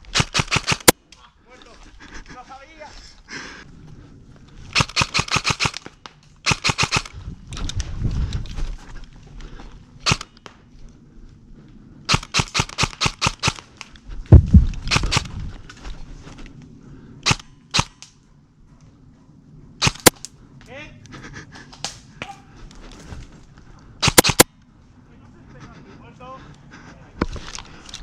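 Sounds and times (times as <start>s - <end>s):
airsoft guns firing: 0.1s - 1.0s, 4.7s - 7.1s, 12.1s - 13.8s, 17.2s - 18.0s, 19.8s - 20.2s, 24.0s - 24.5s.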